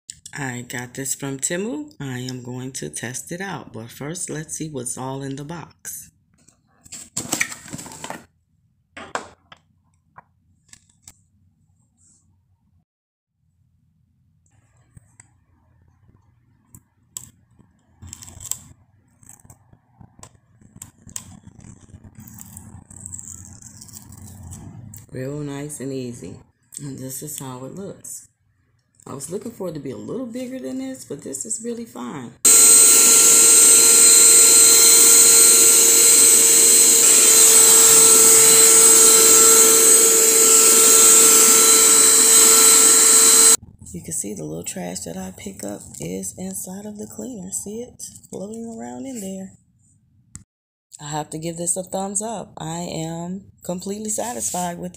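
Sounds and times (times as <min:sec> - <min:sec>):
handheld vacuum cleaner running: 0:32.4 - 0:43.6.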